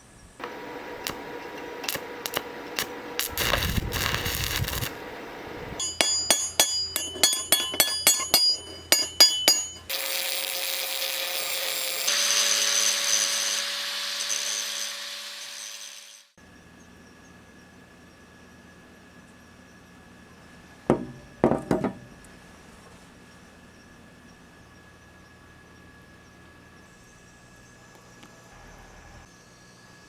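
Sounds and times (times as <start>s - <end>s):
hissing tool with whine: 0.0s - 7.0s, 9.7s - 22.6s
sharp ringing metal strikes: 5.8s - 9.9s
metal scraping rasp: 5.8s - 16.0s.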